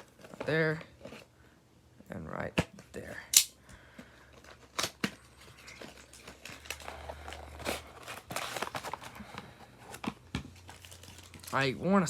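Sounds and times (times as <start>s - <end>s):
plastic packaging crinkling: 4.3s - 11.9s.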